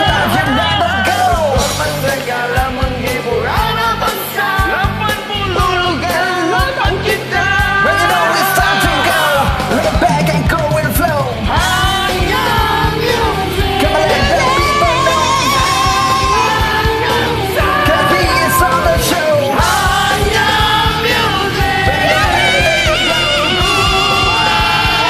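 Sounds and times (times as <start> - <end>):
rock song with singing: 0.0 - 25.0.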